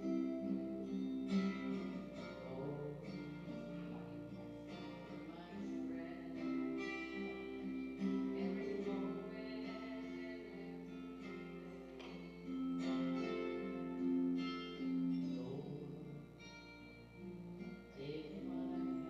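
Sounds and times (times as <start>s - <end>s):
acoustic guitar: 0.0s - 19.0s.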